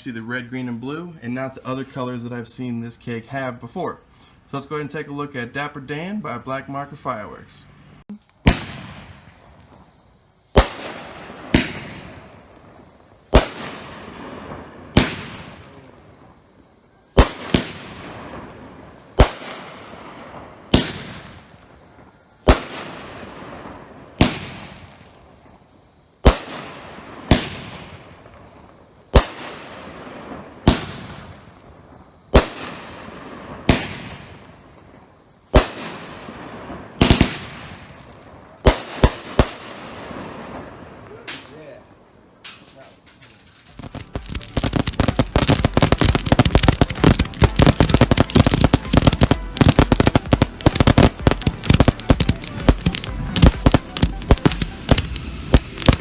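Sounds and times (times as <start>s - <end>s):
firework shots banging: 8.3s - 9.9s, 10.5s - 16.3s, 17.2s - 21.6s, 22.4s - 25.1s, 26.2s - 28.4s, 29.1s - 31.6s, 32.3s - 34.6s, 35.5s - 41.6s, 42.4s - 56.0s.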